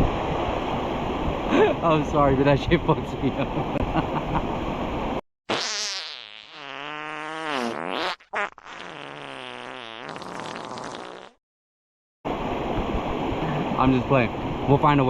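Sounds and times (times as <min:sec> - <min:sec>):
wavering pitched farts: 0:05.5 - 0:11.4.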